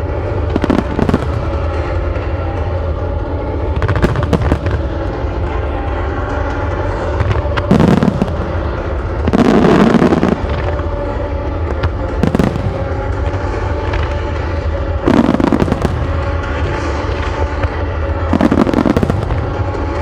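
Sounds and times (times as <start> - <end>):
firework crackling: 0.0 - 20.0.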